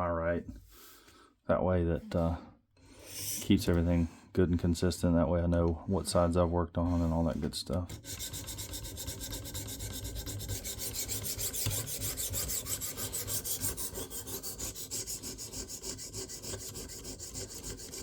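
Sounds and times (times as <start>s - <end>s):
sharpening stone rasping on knife: 8.0s - 18.0s.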